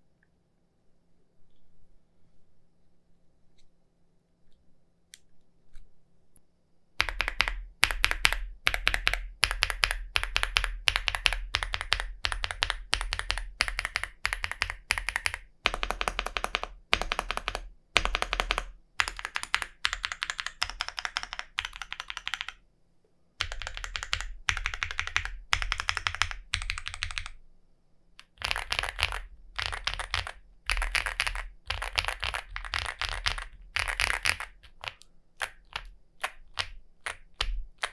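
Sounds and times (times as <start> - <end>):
mechanical keyboard typing: 7.0 - 22.6, 23.4 - 27.4, 28.2 - 37.9.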